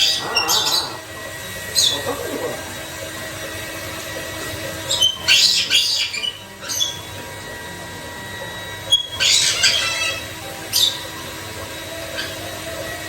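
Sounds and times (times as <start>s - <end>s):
parrot squawking: 0.0s - 1.2s, 4.9s - 7.0s, 8.9s - 11.0s.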